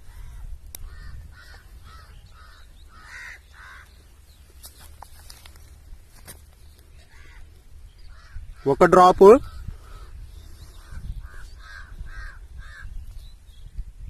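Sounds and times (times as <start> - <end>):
crow cawing: 0.1 - 4.0, 8.1 - 8.8, 10.8 - 12.9.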